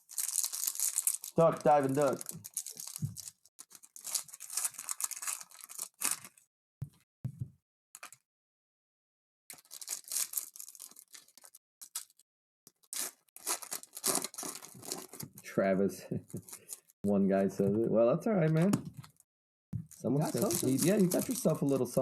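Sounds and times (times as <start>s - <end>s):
foil packs ripping and crinkling: 0.0s - 6.4s, 9.6s - 12.2s, 12.9s - 15.3s, 16.3s - 16.9s, 19.9s - 22.0s.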